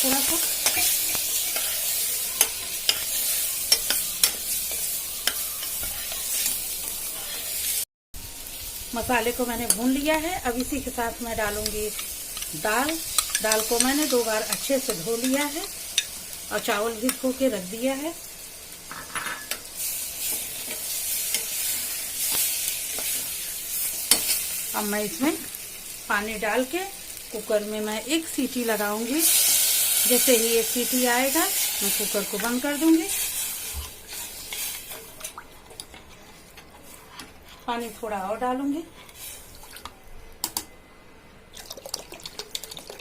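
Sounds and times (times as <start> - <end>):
masala sizzling in hot oil: 0.0 - 39.9
spoon clicking against pan: 11.6 - 15.4.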